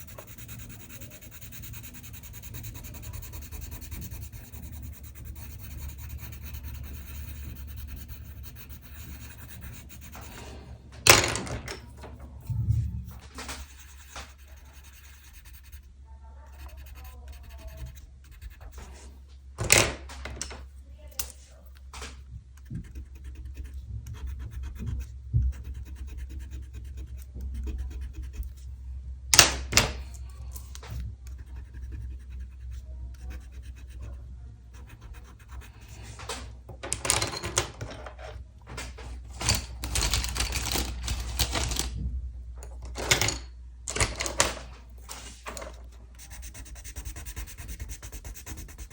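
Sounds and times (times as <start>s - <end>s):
pen scratching on paper: 0.0s - 10.8s, 12.2s - 19.1s, 22.6s - 28.7s, 30.9s - 36.2s, 45.0s - 48.9s.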